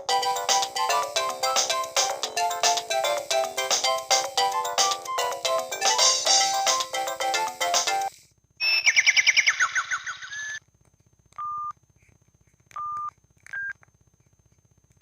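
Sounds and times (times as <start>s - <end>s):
phone electronic notes: 0.0s - 8.1s.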